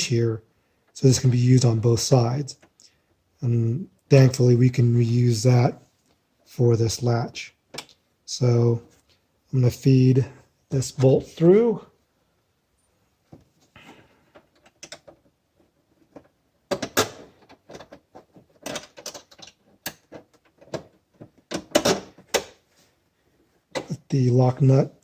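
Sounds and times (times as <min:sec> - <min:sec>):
metal latch parts clicking: 0:18.6 - 0:20.9.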